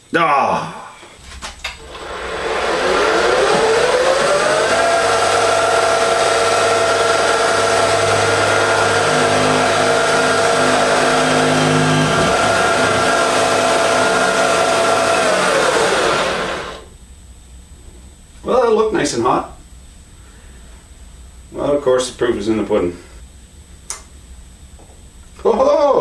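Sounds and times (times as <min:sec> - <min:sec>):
milling machine spindle whine: 0:01.8 - 0:16.9.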